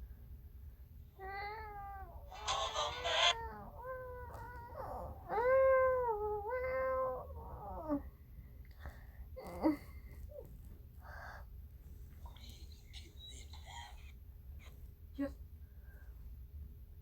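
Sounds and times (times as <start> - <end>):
meow-like cries: 1.2 - 5.4.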